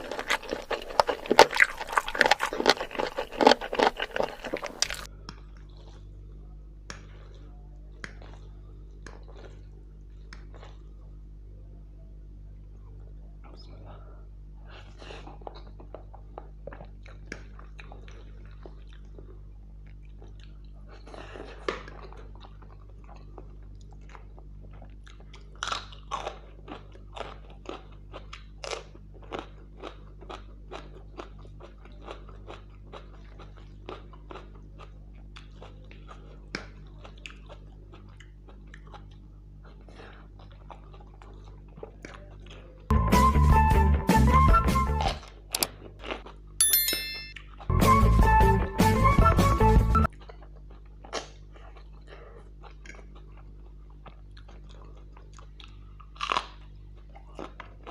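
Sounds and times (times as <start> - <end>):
chewing with crunchy bites: 0.0 - 11.5, 12.5 - 42.9, 45.2 - 46.6, 50.1 - 57.9
loud burst of music: 42.9 - 45.2, 47.7 - 50.1.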